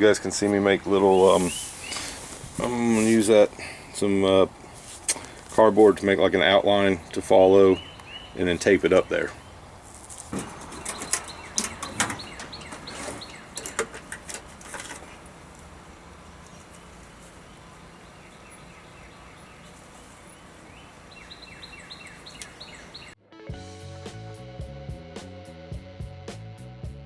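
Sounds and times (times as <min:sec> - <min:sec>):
faint bird chirps: 0:07.7 - 0:08.4, 0:10.6 - 0:13.6, 0:16.2 - 0:23.2
objects clicking and knocking: 0:10.1 - 0:15.7.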